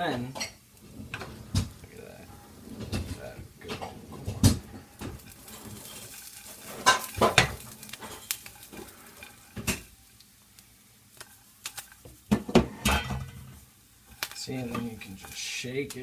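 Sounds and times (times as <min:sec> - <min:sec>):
faint hiss: 0:00.0 - 0:16.0
metal pan and lid clanking: 0:02.7 - 0:10.2, 0:11.6 - 0:16.0.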